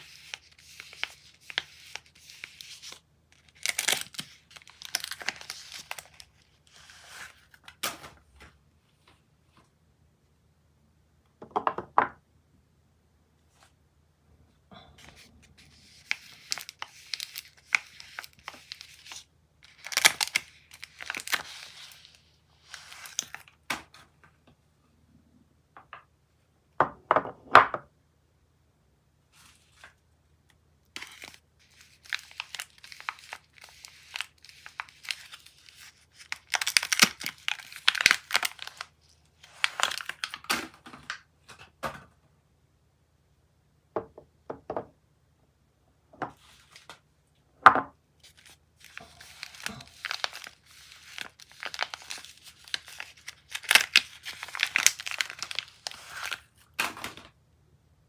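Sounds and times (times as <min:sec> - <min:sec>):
wrappers crinkling: 0:00.0 - 0:07.8, 0:15.1 - 0:23.6, 0:31.0 - 0:40.5, 0:48.2 - 0:56.8.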